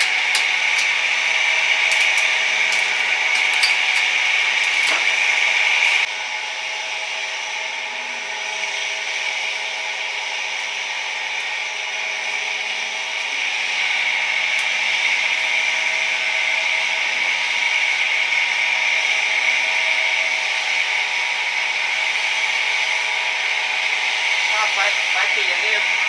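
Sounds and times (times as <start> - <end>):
steady tones: 0.0 - 6.1.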